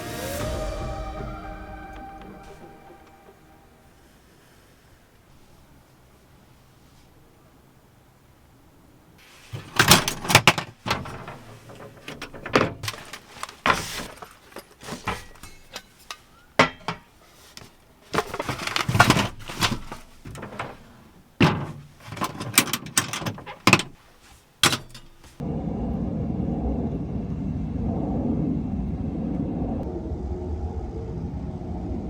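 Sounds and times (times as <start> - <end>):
short rustle: 9.2 - 25.4
irregular knocks and clatters: 9.5 - 17.2.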